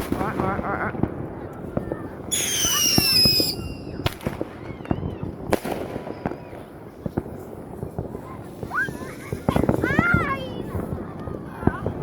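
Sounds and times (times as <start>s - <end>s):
crackling firework pops: 0.0s - 12.0s
firework sharp bangs: 0.0s - 12.0s
firework falling whistle: 2.3s - 6.6s.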